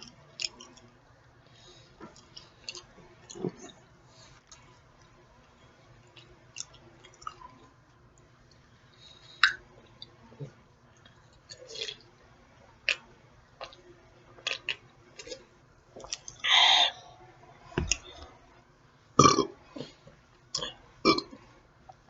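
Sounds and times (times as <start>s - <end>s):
person chewing food: 0.0s - 0.9s, 1.5s - 5.2s, 6.0s - 8.6s, 9.2s - 12.1s, 14.4s - 17.0s.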